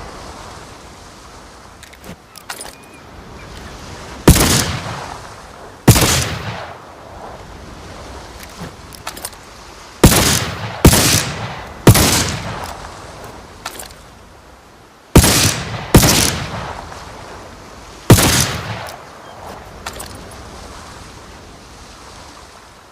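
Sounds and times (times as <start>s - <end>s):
pistol shots ringing out: 5.9s - 6.7s, 10.0s - 12.7s, 15.2s - 16.7s, 18.1s - 19.0s.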